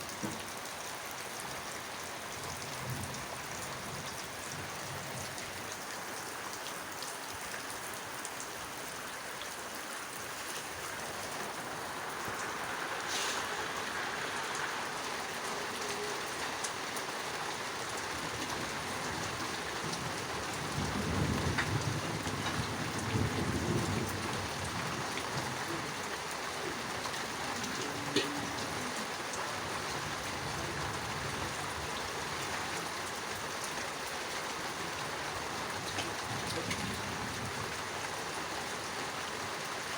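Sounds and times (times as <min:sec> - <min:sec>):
heavy rain falling: 0:00.0 - 0:39.9
low thunder rumble: 0:19.8 - 0:25.9.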